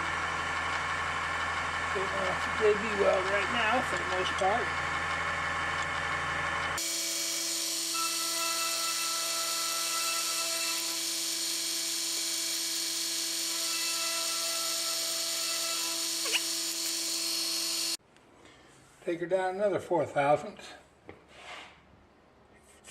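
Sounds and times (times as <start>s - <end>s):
mill motor whine: 0.0s - 18.0s.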